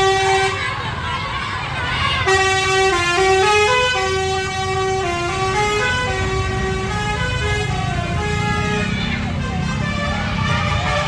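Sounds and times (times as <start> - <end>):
bus engine rumble: 0.0 - 11.0
multi-tone musical bus horn: 0.0 - 11.0.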